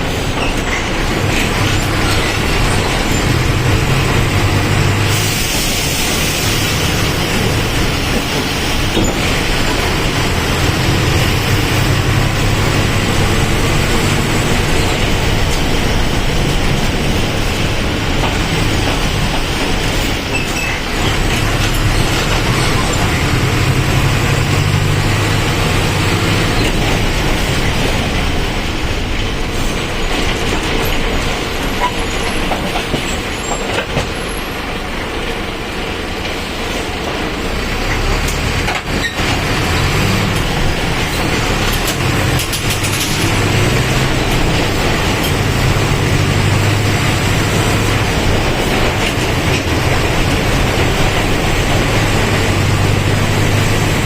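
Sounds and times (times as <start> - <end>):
bus diesel engine accelerating: 0.0 - 54.0.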